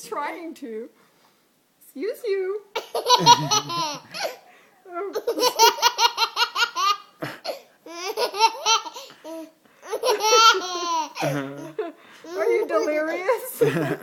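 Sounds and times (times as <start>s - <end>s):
child laughing: 2.8s - 4.4s, 5.1s - 14.0s.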